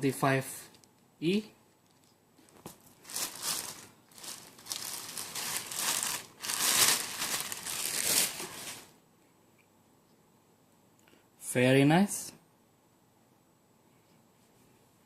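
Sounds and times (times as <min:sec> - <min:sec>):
packaging crinkling: 0:01.8 - 0:09.0.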